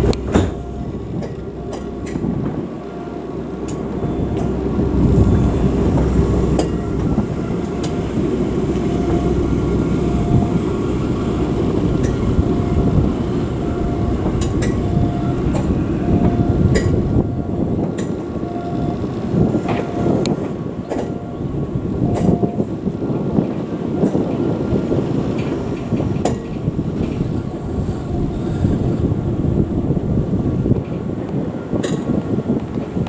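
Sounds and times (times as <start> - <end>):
short warning beep: 0.0 - 22.8
rail car low rumble: 0.0 - 33.0.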